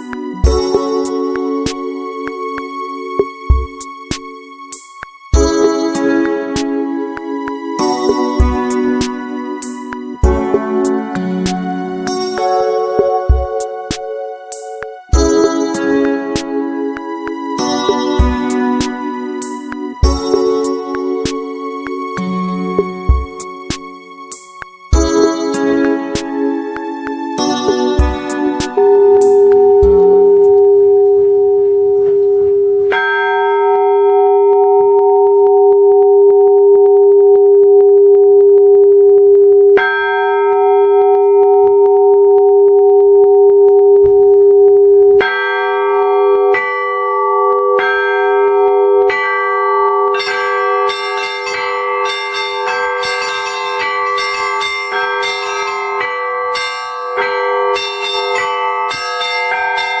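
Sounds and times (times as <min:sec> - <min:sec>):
church bell strokes: 0:28.8 - 0:37.2, 0:39.8 - 1:00.0
small bells pealing rapidly: 0:45.2 - 1:00.0.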